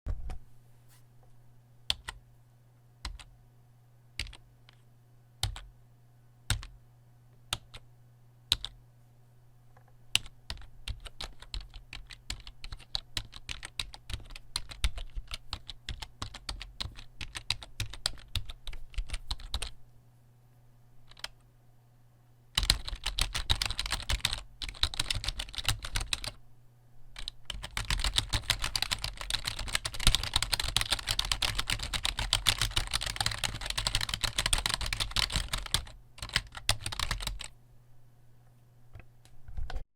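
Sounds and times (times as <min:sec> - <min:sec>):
faint low hum: 0:00.1 - 0:39.8
computer keyboard typing: 0:01.9 - 0:02.2, 0:03.0 - 0:03.3, 0:04.2 - 0:04.4, 0:05.4 - 0:05.7, 0:06.5 - 0:06.8, 0:07.5 - 0:07.8, 0:08.5 - 0:08.8, 0:10.2 - 0:19.7, 0:21.1 - 0:21.4, 0:22.6 - 0:26.4, 0:27.2 - 0:37.5.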